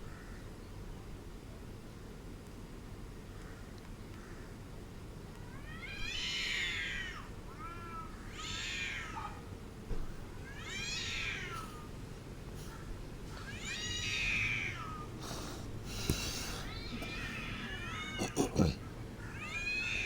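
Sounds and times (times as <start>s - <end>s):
low background hum: 0.0s - 20.0s
angry cat yowling: 16.4s - 20.0s.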